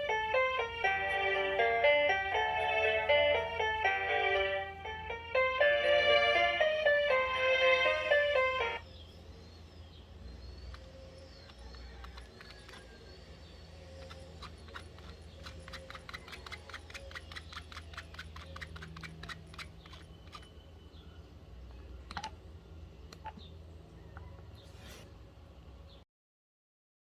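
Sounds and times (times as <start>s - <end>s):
quick run of clicks: 14.0s - 20.5s.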